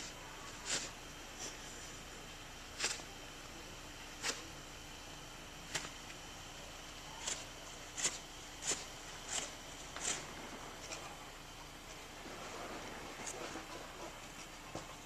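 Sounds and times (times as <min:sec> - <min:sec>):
footsteps crunching through snow: 0:07.2 - 0:15.0.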